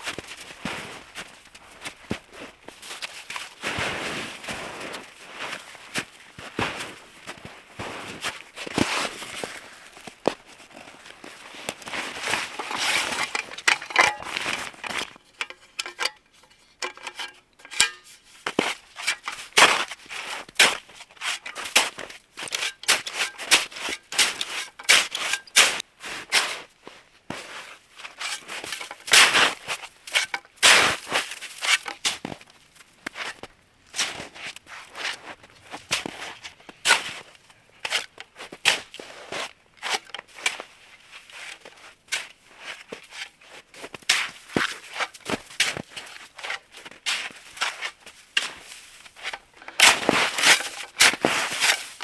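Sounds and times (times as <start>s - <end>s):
footsteps crunching through snow: 0.0s - 15.0s.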